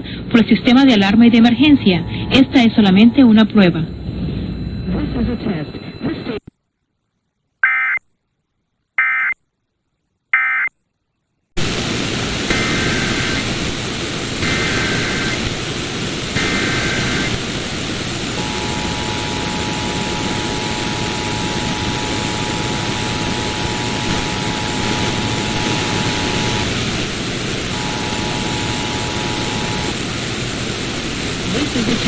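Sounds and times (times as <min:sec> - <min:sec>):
radio static: 0:00.4 - 0:06.5, 0:11.6 - 0:32.0
warbling data bursts: 0:00.9 - 0:06.1, 0:14.4 - 0:30.1.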